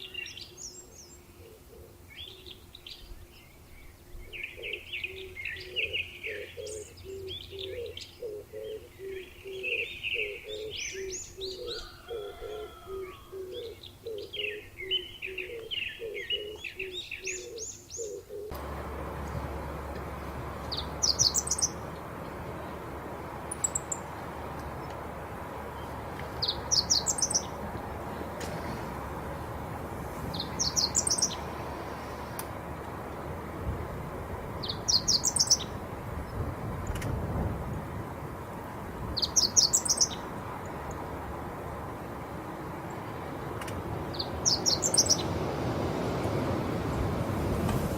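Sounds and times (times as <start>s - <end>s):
birds singing: 0.0s - 33.6s, 34.2s - 47.2s
bird repeating low note: 4.4s - 29.7s
steady background noise: 12.6s - 47.9s
high bird chirps: 20.2s - 25.0s, 25.7s - 27.6s, 30.3s - 31.6s.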